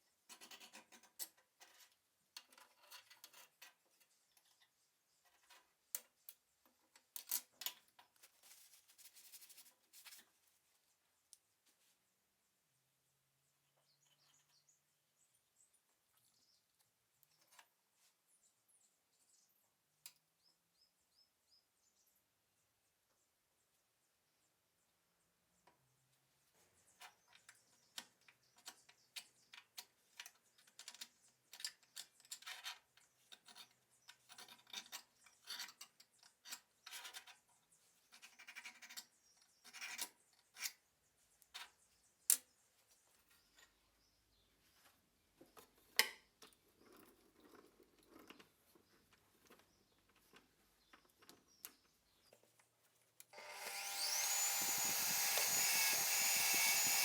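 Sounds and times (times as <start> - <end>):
scraping and tapping of metal tools: 0.3 - 6.4, 26.9 - 37.5
power tool motor running: 53.3 - 57.0.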